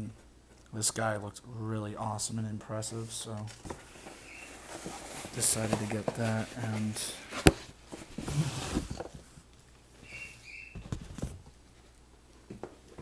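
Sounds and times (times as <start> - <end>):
packaging rustling: 3.4 - 9.2
short high squeaks: 10.0 - 10.8.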